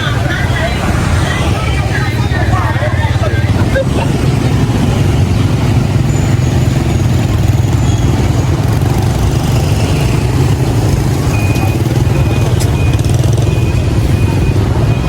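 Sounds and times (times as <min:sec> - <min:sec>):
truck engine rumbling: 0:00.0 - 0:15.0
reversing alarm beeps: 0:09.7 - 0:15.0.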